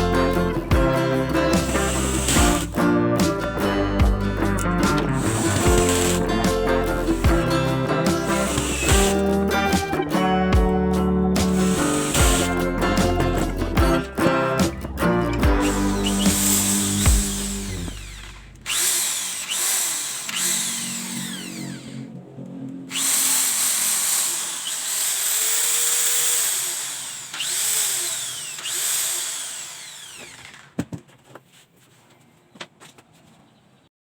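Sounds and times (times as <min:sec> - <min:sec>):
electric drill motor whining: 0:01.6 - 0:02.8, 0:05.1 - 0:07.5, 0:08.3 - 0:09.4, 0:11.4 - 0:12.6, 0:15.5 - 0:22.2, 0:22.9 - 0:30.8.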